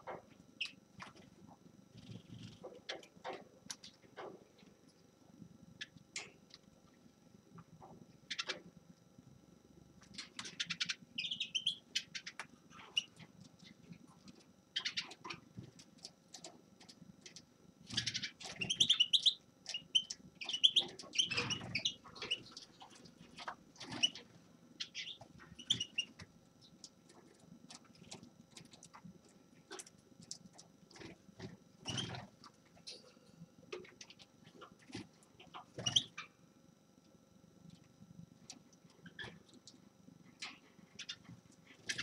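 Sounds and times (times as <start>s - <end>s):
finch twittering and trilling: 10.4s - 13.8s, 14.8s - 15.4s, 17.9s - 26.2s, 35.4s - 36.3s.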